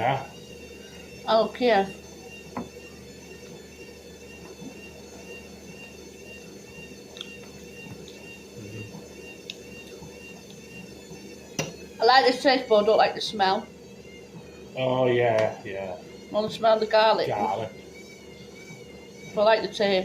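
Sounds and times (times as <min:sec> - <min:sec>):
steady background hum: 0:00.0 - 0:20.0
faint chewing with clicks: 0:07.1 - 0:08.2.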